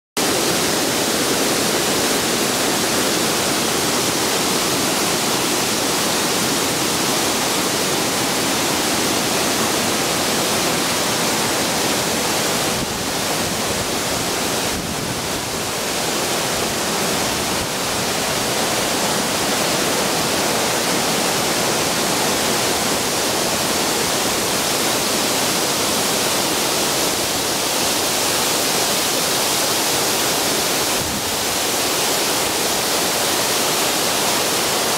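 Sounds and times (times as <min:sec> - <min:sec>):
waterfall roaring: 0:00.2 - 0:34.9.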